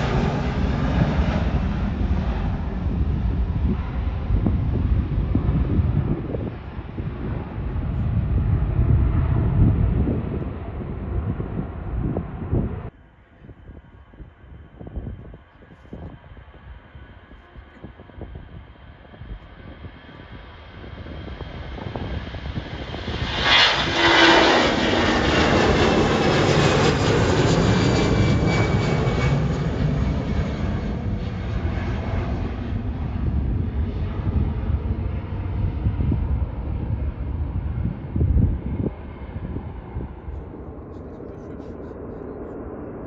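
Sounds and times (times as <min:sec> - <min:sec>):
jet airliner engines passing: 0:00.0 - 0:43.0.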